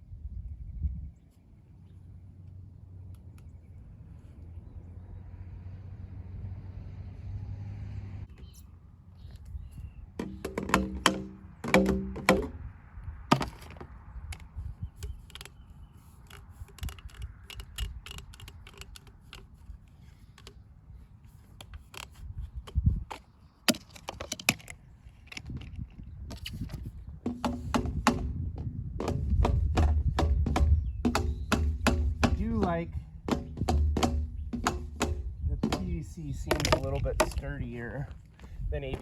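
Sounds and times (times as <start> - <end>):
hollow knocks: 10.2 - 12.6, 13.3 - 13.9, 27.3 - 37.6
plastic pipe fittings clicking: 13.3 - 20.6, 21.2 - 26.8, 34.0 - 37.5.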